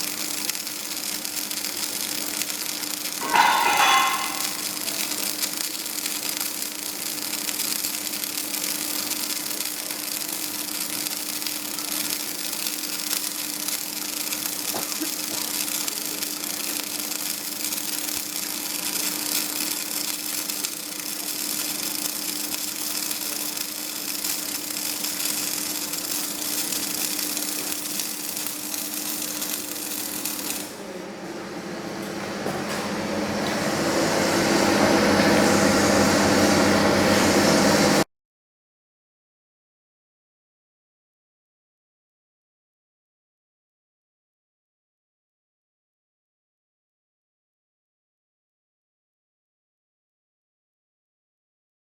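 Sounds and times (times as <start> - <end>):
welding arc crackling and hissing: 0.0 - 30.8, 31.9 - 38.1.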